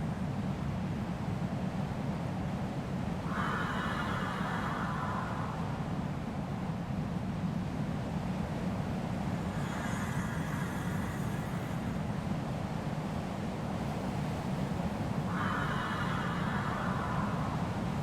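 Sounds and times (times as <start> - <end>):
low wind rumble: 0.0 - 18.0
bright wind hiss: 2.0 - 18.0.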